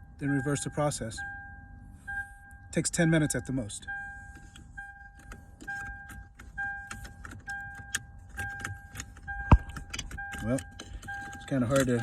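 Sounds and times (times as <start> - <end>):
dashboard warning chime beeping: 0.0 - 12.0
clicking and rattling at dashboard: 4.4 - 12.0.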